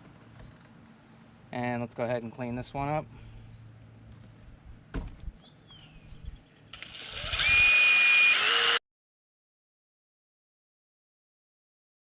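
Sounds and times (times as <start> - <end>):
power tool whining: 6.8 - 8.8.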